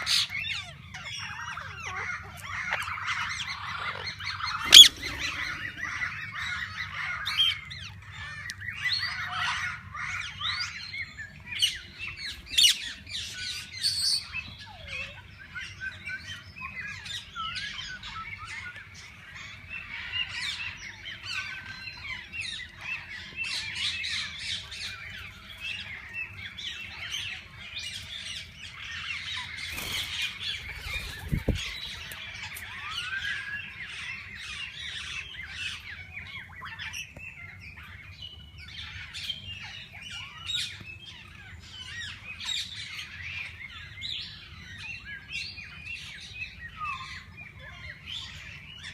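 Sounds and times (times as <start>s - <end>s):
parakeets chattering: 0.0s - 8.3s, 28.0s - 33.3s
parakeet shrieks: 4.6s - 6.0s.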